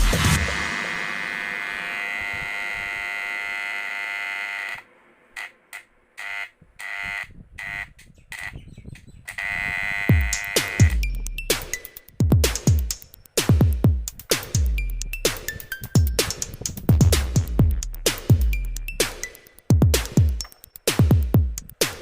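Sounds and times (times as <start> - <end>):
electric hair trimmer buzzing: 0.4 - 5.6, 6.2 - 7.9, 9.4 - 11.0.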